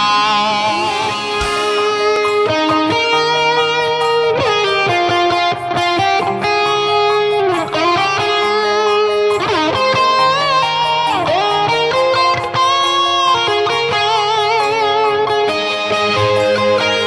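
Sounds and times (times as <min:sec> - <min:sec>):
steady beat: 0:00.0 - 0:06.6
bending electric guitar melody: 0:00.0 - 0:17.0.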